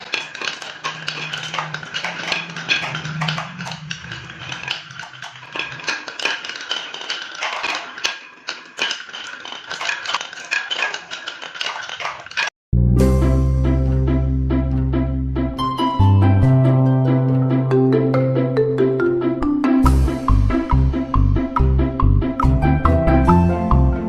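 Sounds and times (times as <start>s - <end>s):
marbles clattering on a track: 0.0s - 12.6s.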